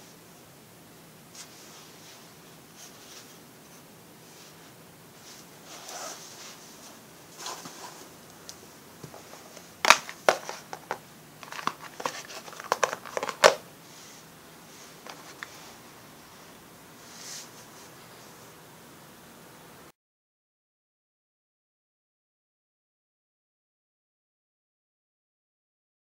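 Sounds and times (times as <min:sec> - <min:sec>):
packaging crinkling: 0:09.1 - 0:13.6.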